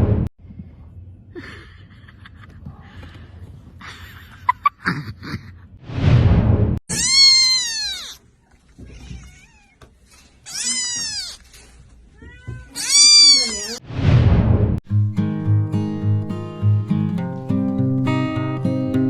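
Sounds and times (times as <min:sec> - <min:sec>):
cat meowing: 0:06.9 - 0:13.8.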